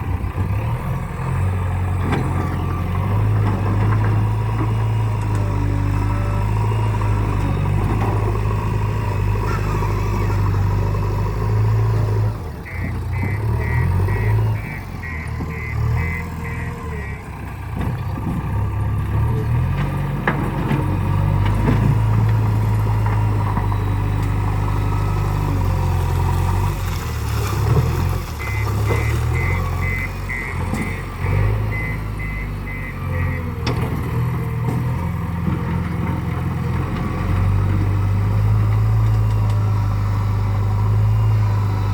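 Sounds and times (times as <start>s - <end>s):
diesel engine under load: 0.0s - 41.9s
reversing alarm beeping: 12.6s - 17.4s, 28.4s - 33.8s, 38.8s - 41.9s.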